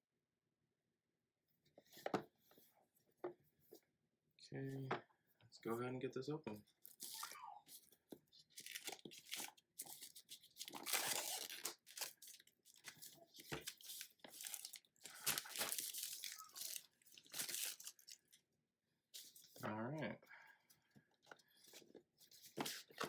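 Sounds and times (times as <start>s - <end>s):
packaging tearing and crinkling: 8.5s - 18.4s.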